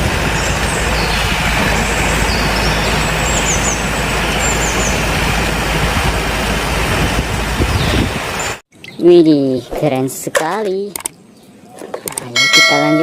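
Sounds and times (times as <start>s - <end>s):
running water rushing: 0.0s - 8.6s.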